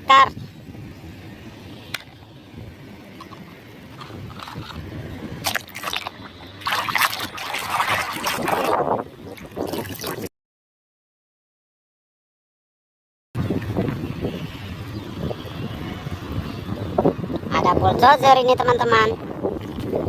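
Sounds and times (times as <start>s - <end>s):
water sloshing and splashing: 3.1s - 10.3s.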